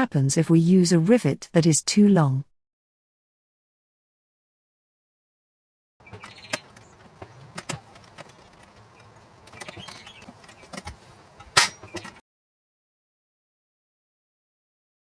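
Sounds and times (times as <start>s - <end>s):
rivet tool clicks and creaks: 6.0s - 12.2s.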